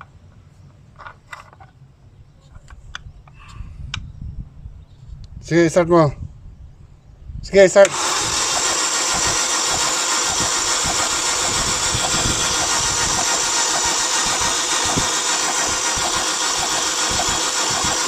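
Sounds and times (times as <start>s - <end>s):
starter motor cranking engine: 7.8s - 18.0s.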